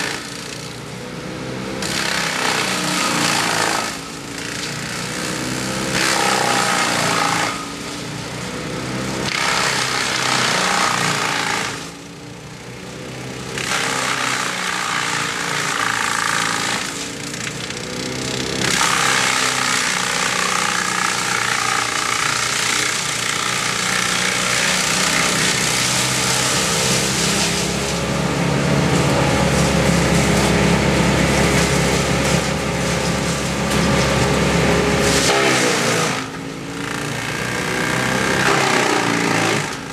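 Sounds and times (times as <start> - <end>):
loud cutting noise: 0.0 - 39.9
power equipment engine revving: 23.7 - 39.9.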